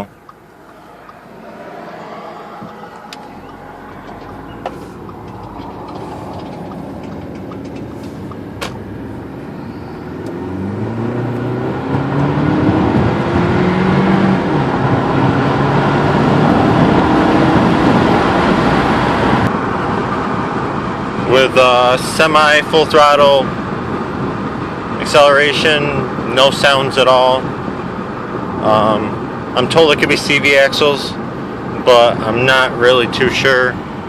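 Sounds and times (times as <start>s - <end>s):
car engine accelerating: 0.0s - 21.2s
road noise: 0.0s - 34.0s.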